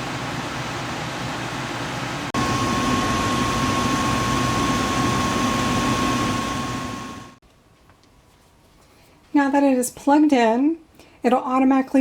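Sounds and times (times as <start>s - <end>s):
air conditioner fan noise: 0.0s - 8.8s
high whine: 2.4s - 7.4s
low hum: 2.4s - 7.4s.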